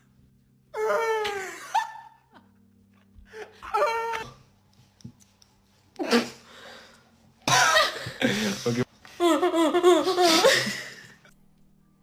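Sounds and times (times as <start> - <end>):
person wailing and moaning: 0.8 - 1.8, 3.3 - 4.4.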